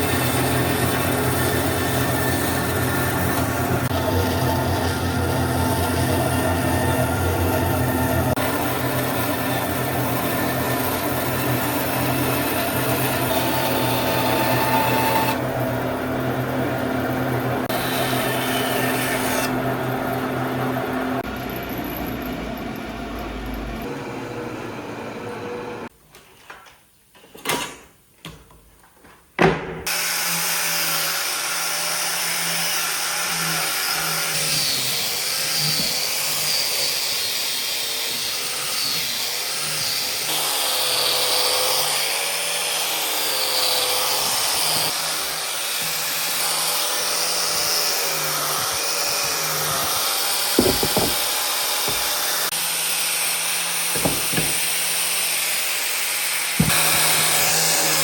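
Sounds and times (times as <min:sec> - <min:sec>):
power tool whining on wood: 0:00.0 - 0:25.9, 0:29.9 - 0:58.0
knocks: 0:50.6 - 0:52.2, 0:54.0 - 0:54.7.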